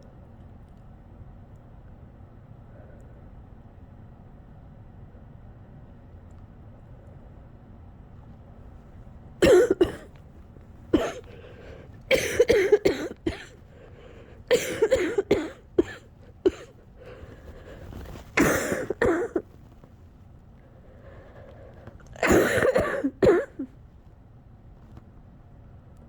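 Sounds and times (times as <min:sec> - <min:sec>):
person coughing: 0:09.4 - 0:10.1, 0:10.9 - 0:19.6, 0:22.0 - 0:23.7
shaky breathing: 0:10.7 - 0:19.9, 0:20.6 - 0:22.2.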